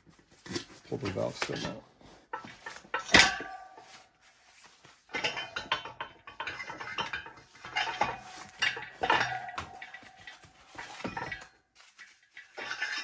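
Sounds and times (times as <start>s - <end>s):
metal tire tools clinking on rim: 2.4s - 4.1s, 5.1s - 13.0s.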